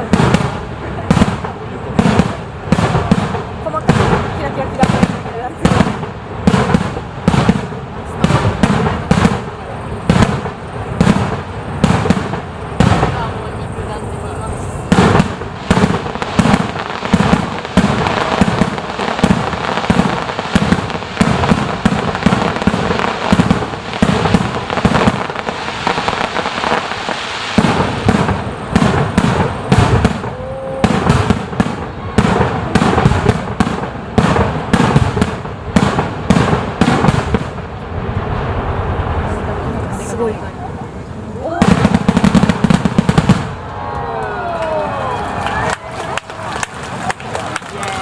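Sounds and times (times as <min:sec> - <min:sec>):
fireworks crackle: 0:00.0 - 0:48.0
fireworks shells bursting: 0:01.2 - 0:37.6.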